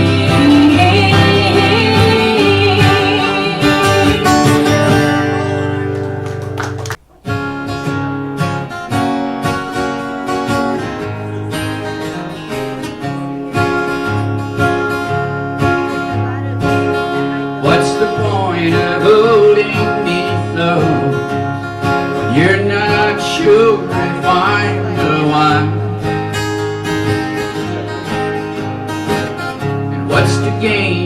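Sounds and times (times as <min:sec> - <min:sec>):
acoustic guitar: 0:00.0 - 0:31.0.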